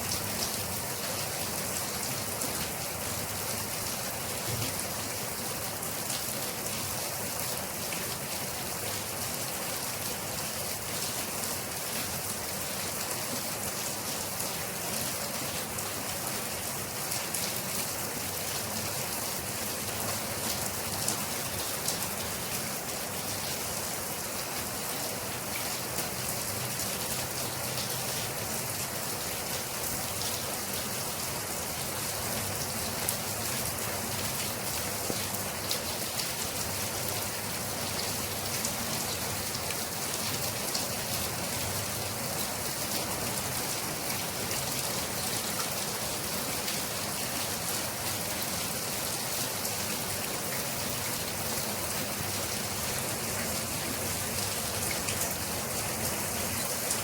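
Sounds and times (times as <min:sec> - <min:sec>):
rain drops pattering: 0:24.6 - 0:57.0.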